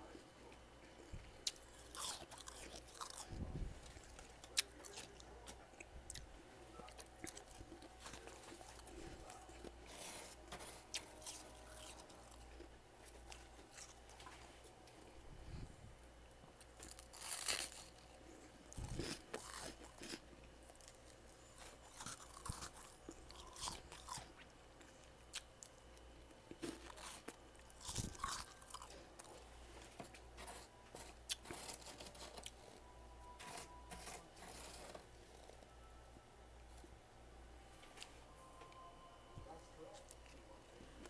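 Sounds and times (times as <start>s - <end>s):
icy crunches of chewing frost: 1.5s - 5.6s, 16.8s - 18.1s, 18.7s - 20.2s, 26.5s - 32.8s, 33.4s - 35.6s.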